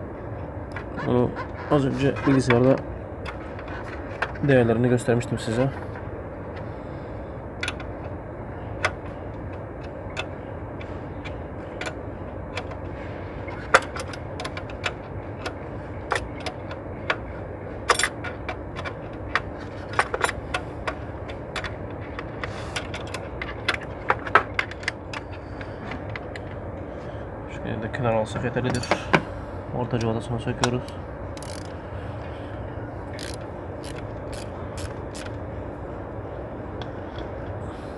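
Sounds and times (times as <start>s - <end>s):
steady background hum: 0.0s - 37.9s.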